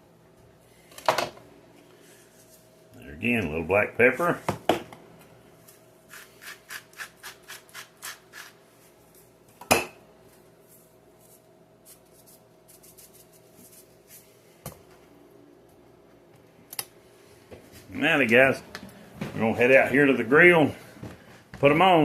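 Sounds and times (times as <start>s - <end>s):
faint steady hum: 0.0s - 22.0s
pepper grinder grinding: 6.1s - 8.6s.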